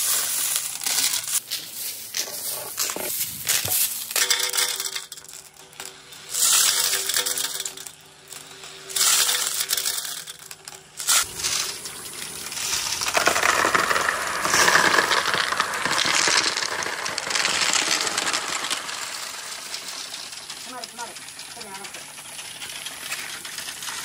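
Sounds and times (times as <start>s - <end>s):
marbles clattering down a run: 2.2s - 24.0s.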